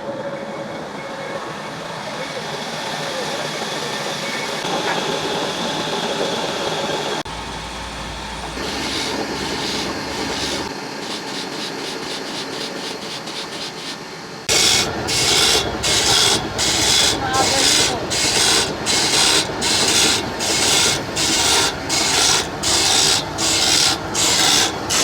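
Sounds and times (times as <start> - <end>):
steady mechanical din: 7.1 - 25.0
file rasping on saw blade: 8.6 - 25.0.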